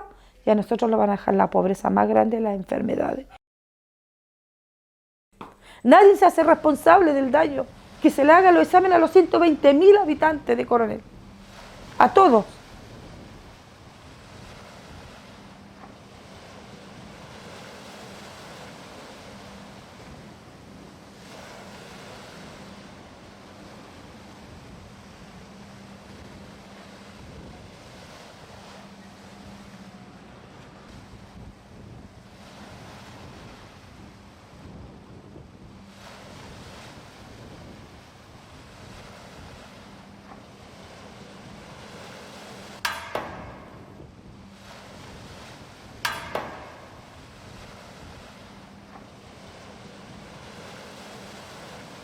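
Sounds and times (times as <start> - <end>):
surf washing: 5.4 - 52.0
low steady hum: 5.5 - 52.0
wind noise on microphone: 5.8 - 52.0
sharp ringing knocks: 42.8 - 49.2.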